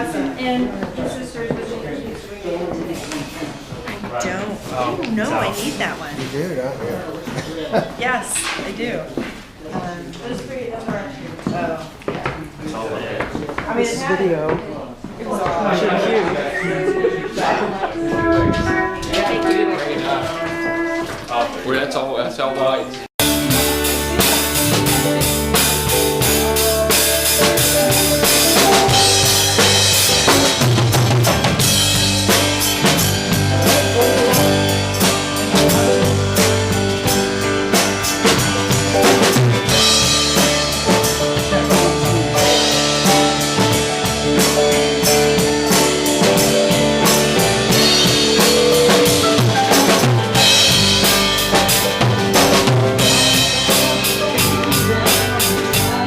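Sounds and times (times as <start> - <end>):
drum kit beat: 2.8 - 6.3, 15.3 - 21.3, 23.2 - 56.0
live band playing: 2.8 - 6.9, 16.0 - 22.0, 23.2 - 56.0.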